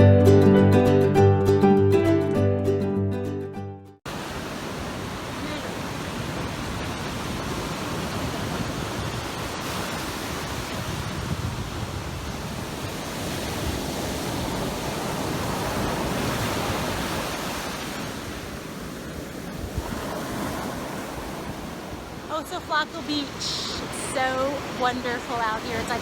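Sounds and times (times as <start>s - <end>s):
ocean waves breaking on beach: 4.1s - 26.0s
wind on microphone: 4.2s - 26.0s.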